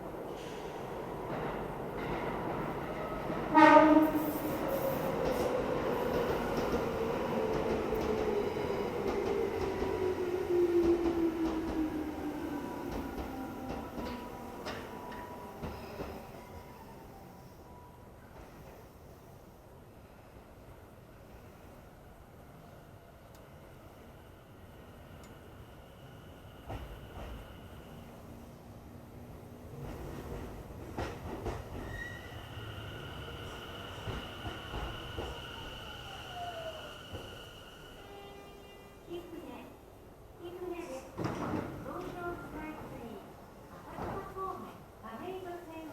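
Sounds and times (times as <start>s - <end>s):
train rumbling on rails: 0.0s - 45.9s
train horn blast: 3.5s - 4.4s, 38.0s - 39.0s.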